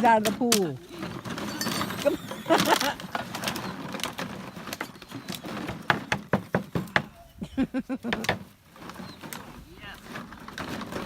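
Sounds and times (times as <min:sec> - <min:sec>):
puppies scrambling knocks: 0:00.0 - 0:09.5
puppies yipping: 0:07.0 - 0:07.8.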